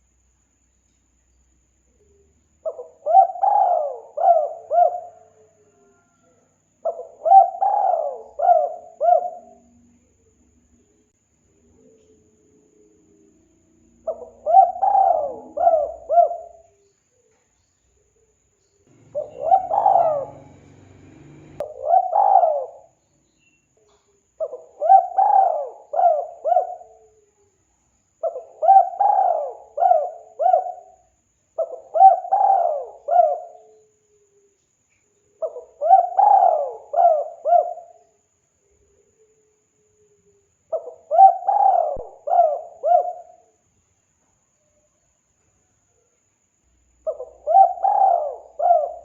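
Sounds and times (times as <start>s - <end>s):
dove cooing: 2.6s - 10.0s, 14.0s - 16.8s, 18.9s - 23.0s, 23.9s - 27.3s, 28.2s - 31.0s, 31.6s - 33.9s, 35.4s - 38.0s, 40.7s - 43.5s, 47.0s - 49.0s.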